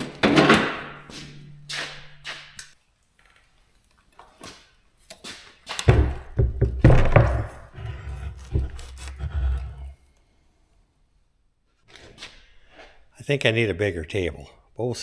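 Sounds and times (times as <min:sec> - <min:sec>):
bike knocking on workbench: 0:05.9 - 0:07.8.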